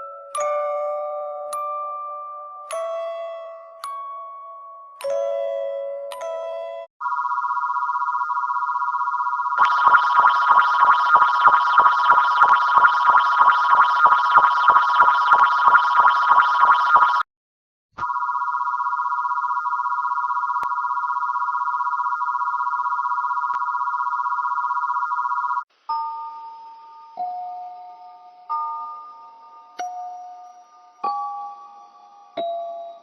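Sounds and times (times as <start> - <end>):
electronic alert tones: 9.6 - 17.2
rapid beeping pulse: 9.6 - 17.2.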